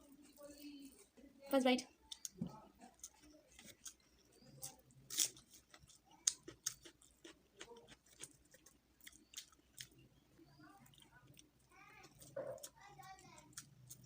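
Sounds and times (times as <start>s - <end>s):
wet chewing smacks: 5.3s - 12.8s.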